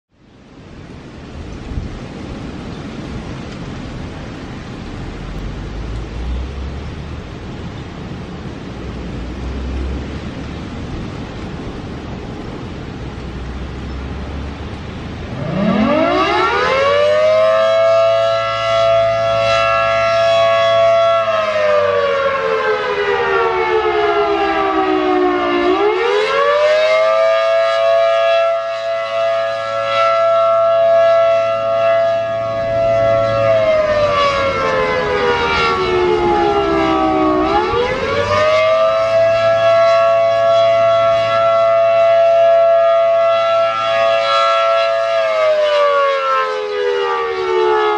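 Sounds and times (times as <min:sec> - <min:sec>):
rotating siren wailing: 0:15.1 - 0:47.9.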